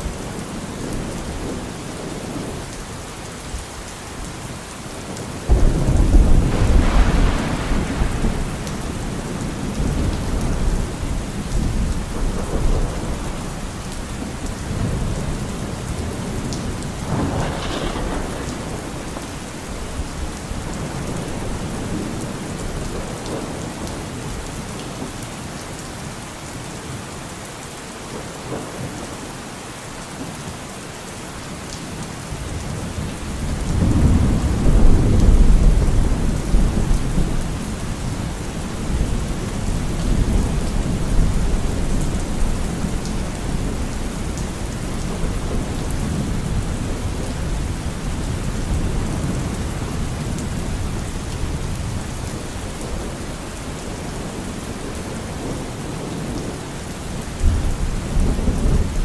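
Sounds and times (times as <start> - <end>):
steady rain falling: 0.0 - 59.0
low rumble of thunder: 5.1 - 24.8, 32.4 - 59.0
thunder crack: 5.5 - 10.9, 16.9 - 22.0.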